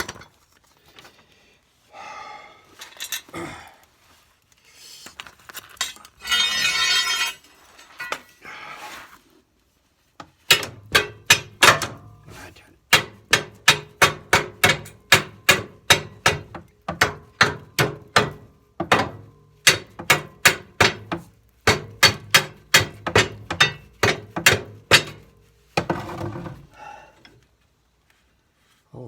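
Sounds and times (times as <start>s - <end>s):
hammer striking metal nut: 10.5s - 12.2s, 12.9s - 26.1s.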